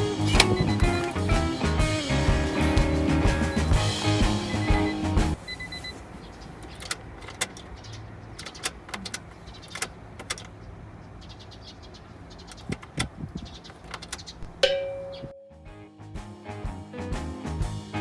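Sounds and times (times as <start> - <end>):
handling clicks and knocks: 0.0 - 1.8, 6.0 - 10.8, 12.1 - 15.4
sharp hit with ringing tone: 14.6 - 15.6.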